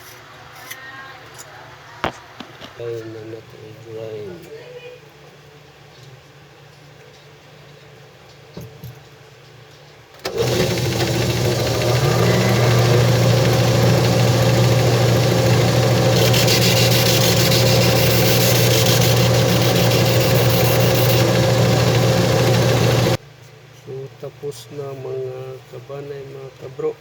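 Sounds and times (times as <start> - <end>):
electric grinder whining: 10.3 - 23.2
grinding wheel hissing on shoe: 15.9 - 23.2.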